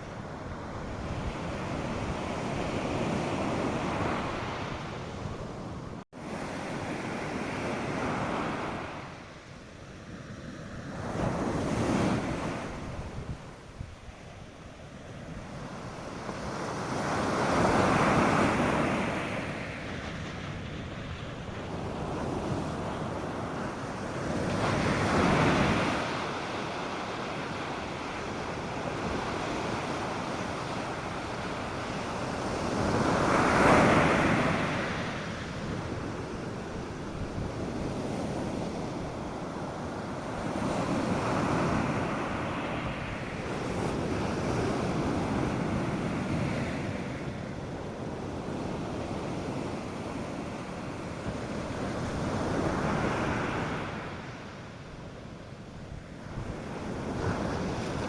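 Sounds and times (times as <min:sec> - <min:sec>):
surf breaking on sandy beach: 0:15.2 - 0:54.7.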